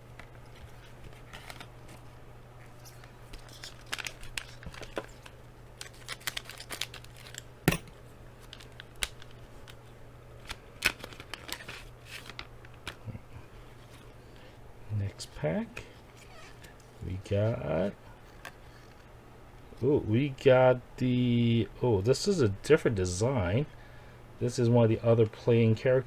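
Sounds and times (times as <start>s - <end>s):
wrapper crinkling and rustling: 0.2s - 7.6s, 8.3s - 14.6s.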